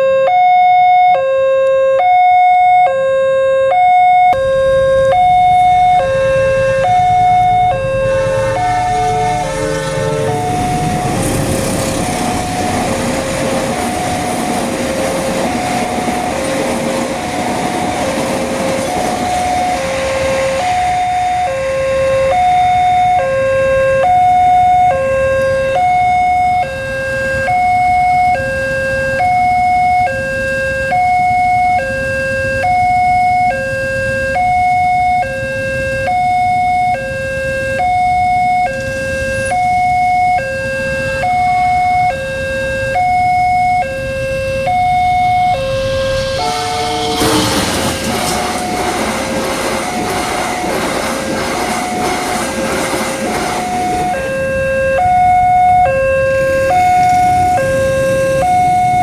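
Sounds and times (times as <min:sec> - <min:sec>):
level crossing two-tone alarm: 0:00.0 - 0:59.0
passing train rumble: 0:04.3 - 0:59.0.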